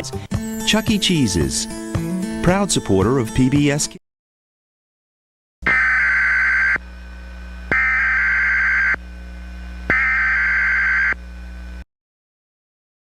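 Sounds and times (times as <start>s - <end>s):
steady low hum: 6.5s - 11.8s.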